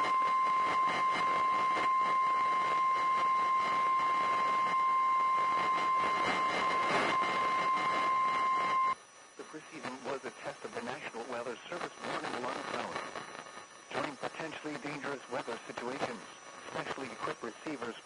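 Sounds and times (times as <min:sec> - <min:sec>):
steady alarm tone: 0:00.0 - 0:09.0
radio static hiss: 0:00.0 - 0:18.0.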